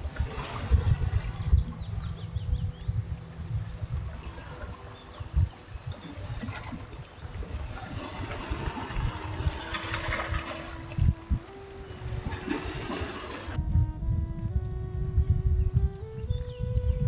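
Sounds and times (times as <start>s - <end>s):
low rumble: 0.0s - 5.6s
small waves lapping at shore: 0.0s - 13.6s.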